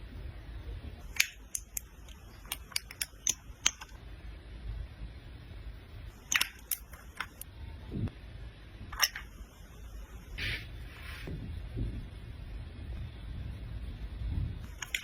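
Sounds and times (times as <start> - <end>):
faint low hum: 0.0 - 15.0
makeup cases clicking: 1.1 - 3.9, 6.3 - 7.4, 9.0 - 9.3, 14.7 - 15.0.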